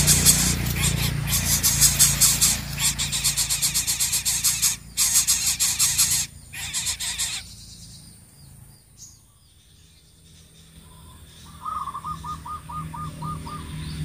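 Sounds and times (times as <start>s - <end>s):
chicks rasping begging calls: 0.0s - 7.9s, 11.4s - 13.8s.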